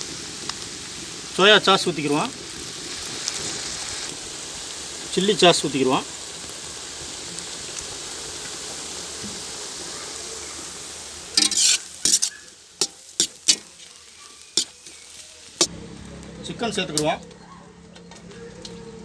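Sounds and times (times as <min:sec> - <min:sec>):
vegetables sizzling in a pan: 0:00.0 - 0:15.7
spatula scraping and clacking pan: 0:11.4 - 0:15.2.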